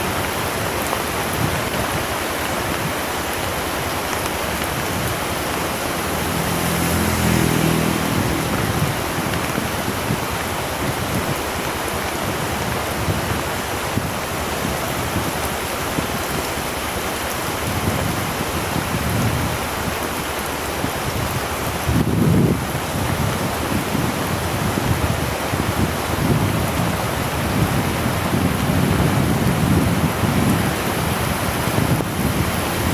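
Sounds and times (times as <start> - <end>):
heavy rain: 0.0 - 32.9
engine droning: 5.3 - 10.7.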